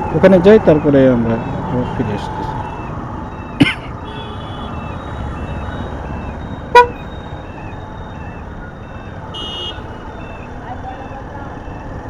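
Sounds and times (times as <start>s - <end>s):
motorcycle road and wind noise: 0.0s - 12.0s
vehicle horn toot: 4.0s - 5.9s, 6.7s - 7.2s, 9.3s - 10.0s.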